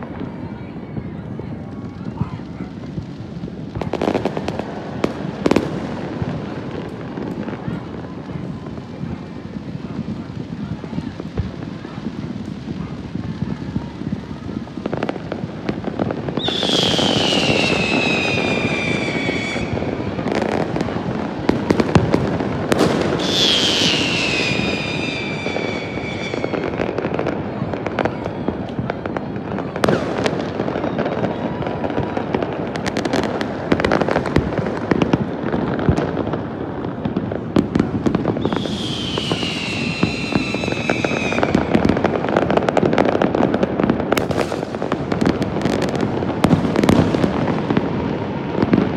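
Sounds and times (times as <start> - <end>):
fireworks crackling and banging: 0.0 - 48.9
falling firework whistles: 16.3 - 20.7, 22.7 - 27.0, 38.3 - 42.1.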